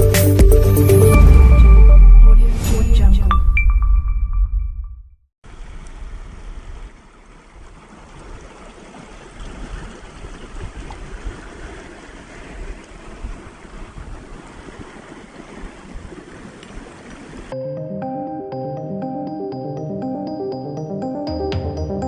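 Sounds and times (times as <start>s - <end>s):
music: 0.0s - 3.1s, 17.5s - 22.0s
wind on microphone: 9.5s - 11.8s, 12.5s - 15.0s, 15.6s - 16.9s.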